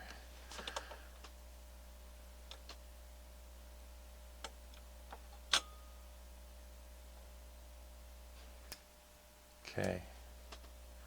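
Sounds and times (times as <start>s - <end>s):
faint low hum: 0.0s - 11.0s
turntable switches clicking: 4.4s - 5.8s.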